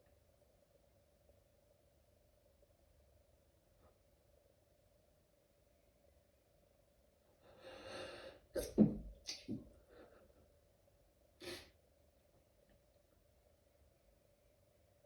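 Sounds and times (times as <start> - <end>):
breathing: 7.4 - 8.5
person sneezing: 8.6 - 9.4, 11.4 - 11.7.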